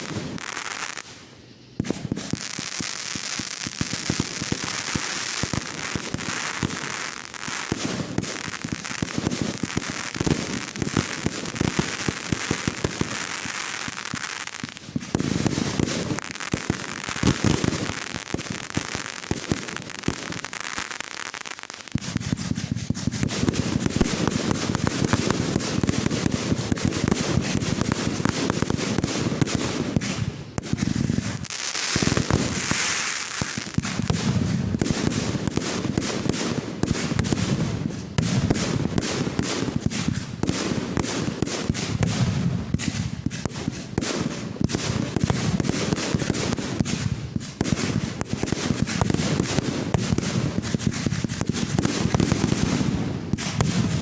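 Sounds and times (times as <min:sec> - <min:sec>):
fireworks crackling and popping: 0:00.0 - 0:54.0
deep firework booms: 0:22.0 - 0:31.4, 0:32.0 - 0:54.0.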